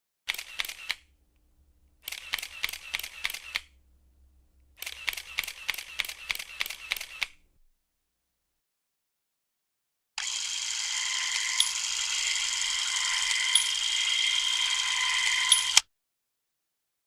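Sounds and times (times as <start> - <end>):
camera shutter clicking: 0.3 - 1.1, 2.0 - 3.8, 4.8 - 7.4, 10.2 - 15.8.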